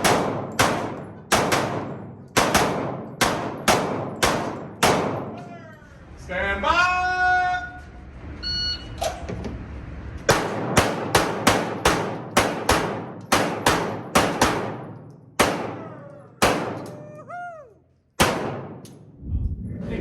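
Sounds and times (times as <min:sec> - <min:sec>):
pistol shots: 0:00.0 - 0:05.4, 0:10.3 - 0:17.0, 0:18.2 - 0:19.1.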